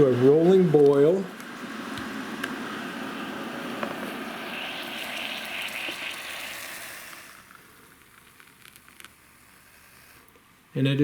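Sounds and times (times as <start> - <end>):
water boiling and bubbling: 1.0 - 8.4.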